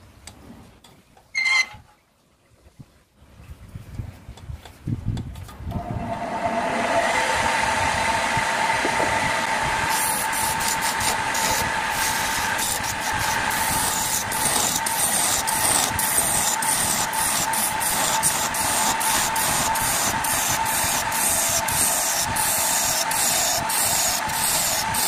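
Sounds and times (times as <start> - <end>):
tool cutting spinning wood: 5.7 - 25.0
wood lathe motor whine: 5.7 - 25.0.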